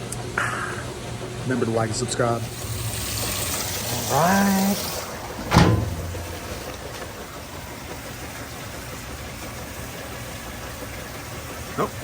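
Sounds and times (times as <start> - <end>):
washer filling with water: 0.8 - 12.0.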